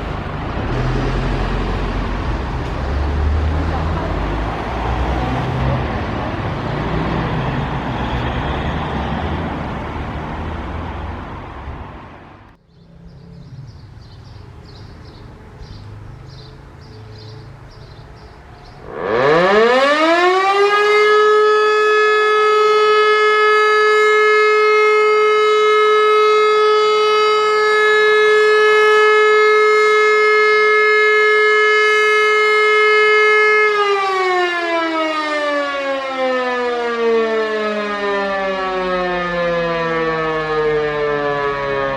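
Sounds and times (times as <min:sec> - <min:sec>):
rushing noise: 0:00.0 - 0:12.5
siren rising howl and steady tone: 0:18.5 - 0:41.9.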